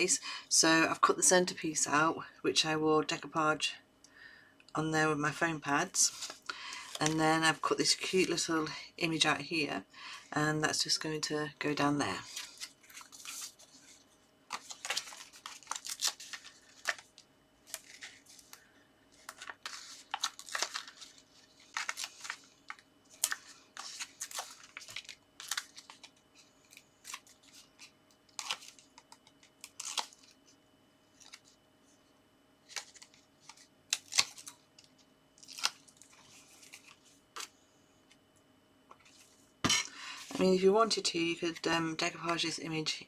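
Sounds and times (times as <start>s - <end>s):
paper rustling and scraping: 5.9s - 7.3s, 12.1s - 31.6s, 32.6s - 37.5s, 38.9s - 39.4s.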